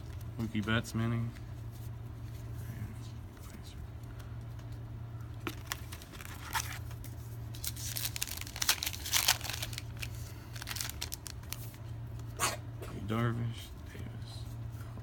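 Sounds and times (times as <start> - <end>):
foil wrapper tearing and crinkling: 5.5 - 11.8.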